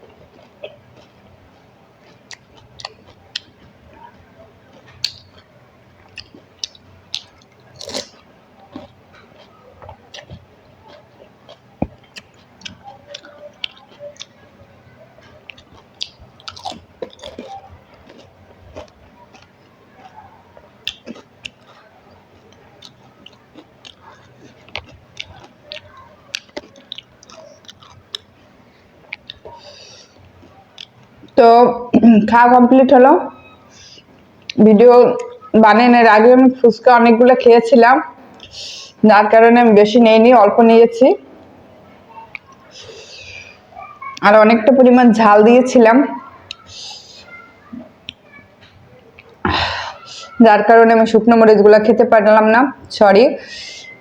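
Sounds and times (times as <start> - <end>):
wet chewing: 0.0 - 31.4, 42.1 - 44.2.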